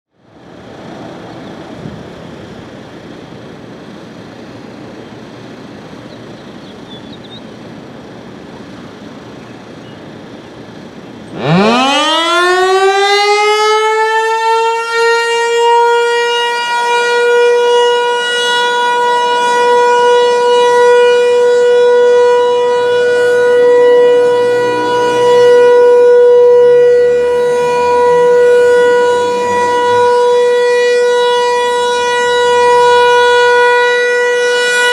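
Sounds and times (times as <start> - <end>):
steady background noise: 0.1 - 34.9
rotating warning siren: 0.2 - 34.9.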